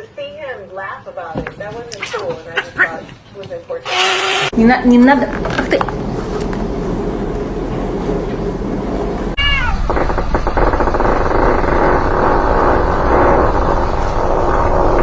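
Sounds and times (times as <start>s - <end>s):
dense noisy sound: 4.5s - 15.0s
cat meowing: 9.4s - 9.8s.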